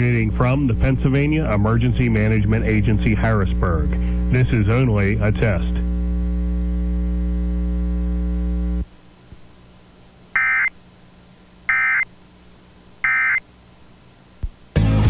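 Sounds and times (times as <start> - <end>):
low electrical hum: 0.0 - 14.8
data tone bursts: 10.4 - 10.7, 11.7 - 12.1, 13.0 - 13.4.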